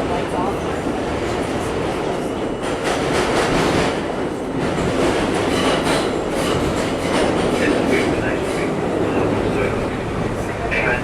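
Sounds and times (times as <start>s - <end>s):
subway car rumble: 0.0s - 11.0s
wheels clacking over rail joints: 4.7s - 8.8s.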